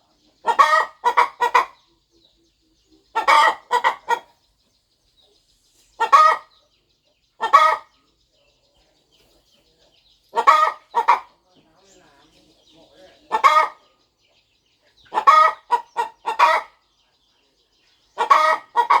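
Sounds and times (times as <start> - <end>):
hen clucking: 0.0 - 19.0.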